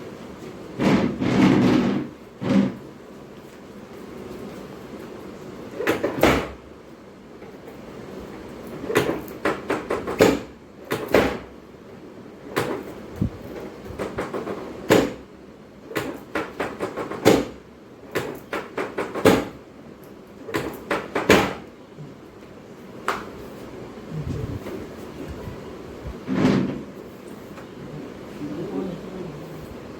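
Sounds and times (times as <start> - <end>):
sharp knocks and clicks: 13.6 - 15.2, 15.9 - 19.6.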